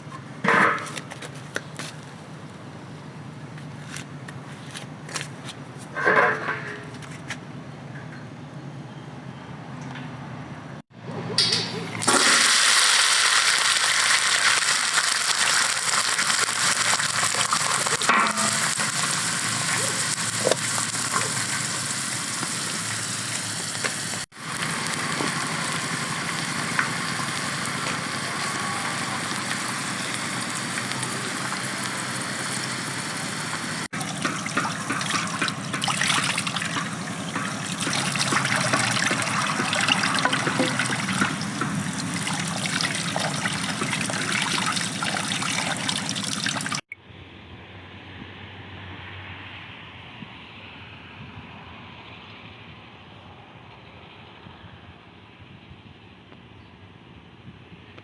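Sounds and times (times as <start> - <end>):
water running and splashing: 11.9 - 46.9.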